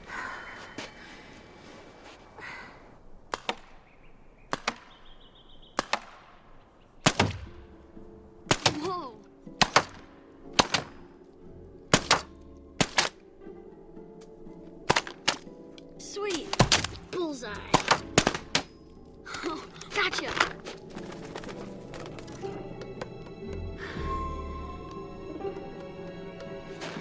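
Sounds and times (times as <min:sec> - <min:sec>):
film score with sustained tones: 0:06.4 - 0:27.0.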